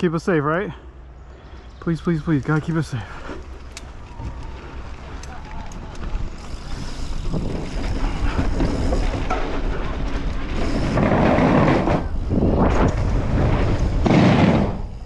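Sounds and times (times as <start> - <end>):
bike tyres on dirt: 1.4 - 15.0
wind on microphone: 4.0 - 15.0.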